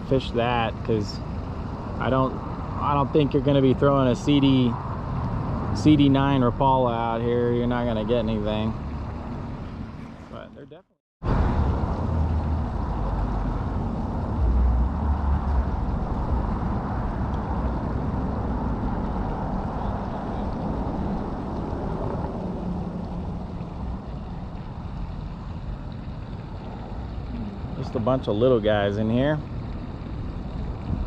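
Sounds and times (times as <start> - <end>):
wind buffeting microphone: 11.2 - 31.0.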